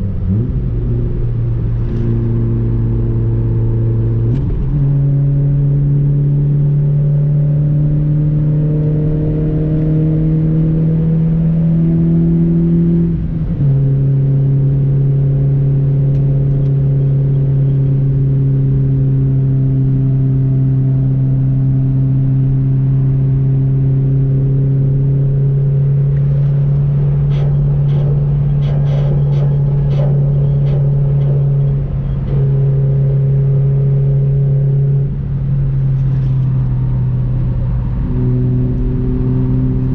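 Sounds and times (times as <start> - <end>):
car engine pulling hard: 0.0 - 39.9.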